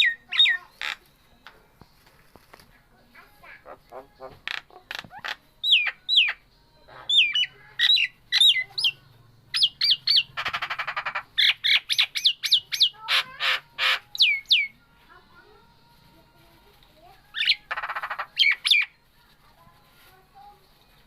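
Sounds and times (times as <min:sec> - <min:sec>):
rapid rattling call: 0:09.6 - 0:14.3, 0:17.4 - 0:18.9
myna whistles and squawks: 0:09.6 - 0:14.8.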